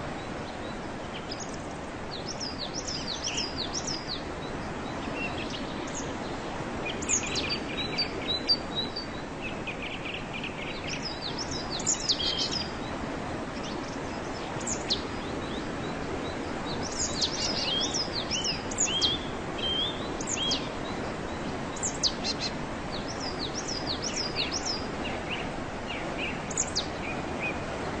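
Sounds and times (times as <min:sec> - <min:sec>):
small birds chirping: 0:00.3 - 0:28.0
waterfall rushing: 0:10.7 - 0:28.0.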